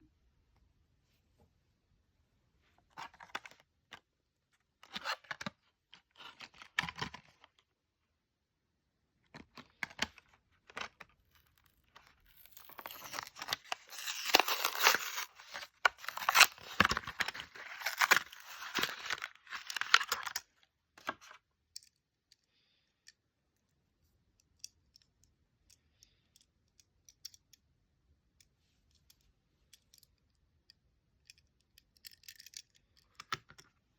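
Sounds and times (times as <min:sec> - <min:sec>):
packaging tearing and crinkling: 0:11.5 - 0:20.5.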